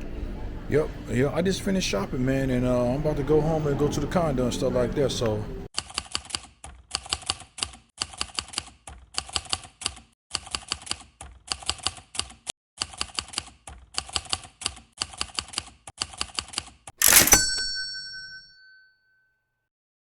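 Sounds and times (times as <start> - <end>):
rapid keyboard typing: 5.8 - 17.4.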